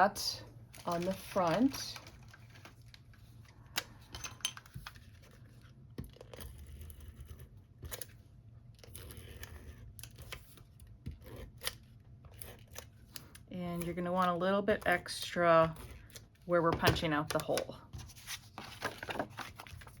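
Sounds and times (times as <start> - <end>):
paper rustling: 18.0 - 20.0.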